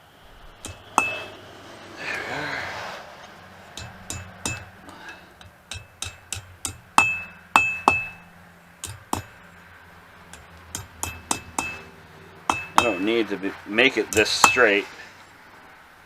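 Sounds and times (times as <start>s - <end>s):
hammer striking steel on anvil: 0.6s - 1.4s, 3.7s - 9.4s, 10.3s - 13.3s, 13.9s - 14.8s.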